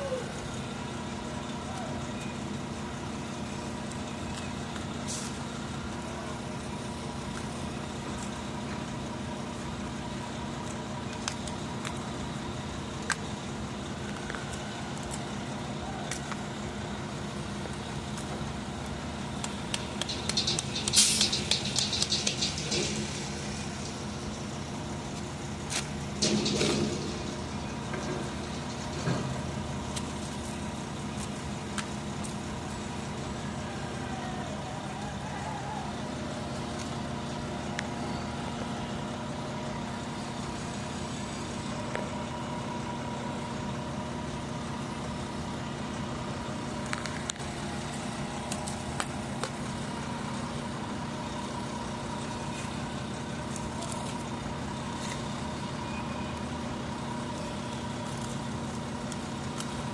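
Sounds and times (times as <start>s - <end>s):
engine running: 0.0s - 59.9s
clattering bursts: 19.4s - 30.7s.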